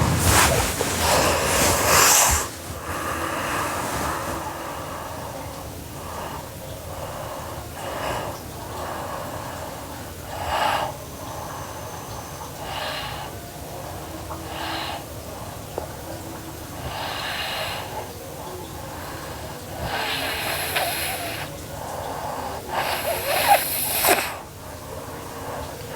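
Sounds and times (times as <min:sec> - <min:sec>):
girl snoring: 0:00.0 - 0:05.2, 0:19.8 - 0:21.5, 0:22.4 - 0:24.4.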